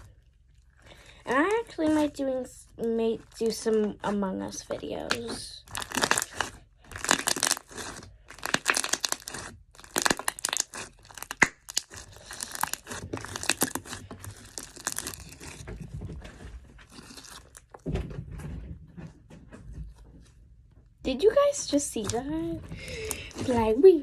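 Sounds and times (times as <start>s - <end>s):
slime crackling and popping: 0.8s - 15.8s, 16.8s - 17.8s, 22.8s - 23.7s.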